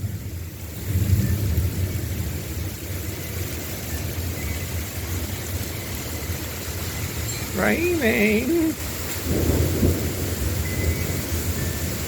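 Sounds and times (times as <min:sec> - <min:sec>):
distant thunder rumbling: 0:08.7 - 0:12.0.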